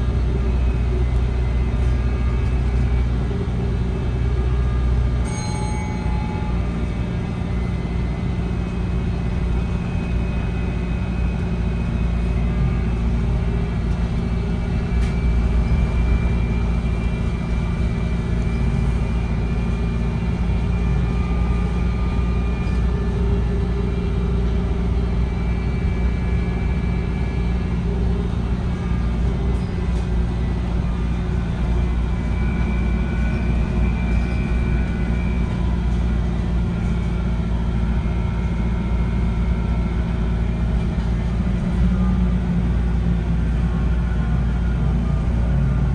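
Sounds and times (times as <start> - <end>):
bus engine rumbling: 0.0 - 45.9
humming tones: 4.4 - 42.4
high whine: 5.2 - 7.1.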